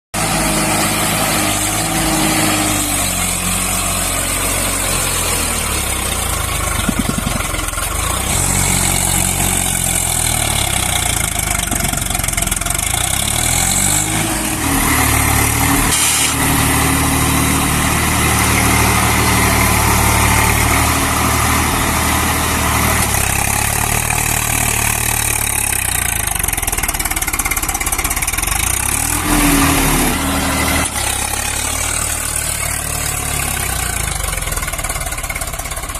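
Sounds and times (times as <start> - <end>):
tractor diesel engine revving: 0.2 - 35.9.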